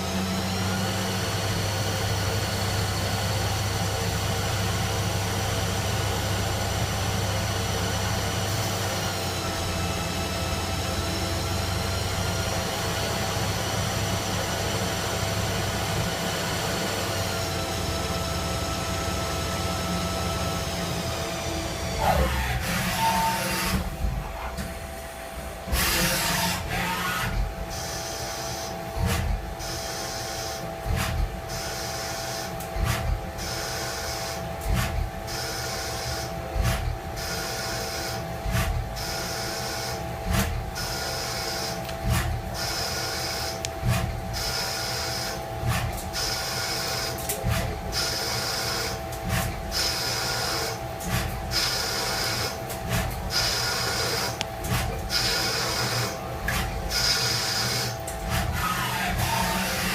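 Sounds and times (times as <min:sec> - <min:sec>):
machine tool whining: 0:00.0 - 0:30.4, 0:39.0 - 0:59.9.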